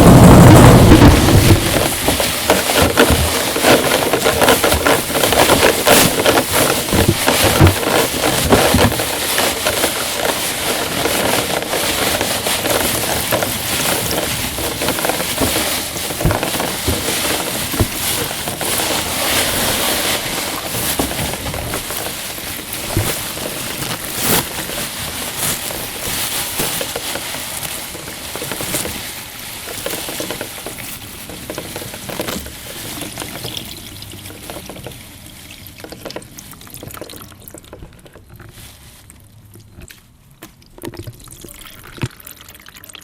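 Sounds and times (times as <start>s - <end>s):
foley rain crackling patter: 0.0s - 39.6s.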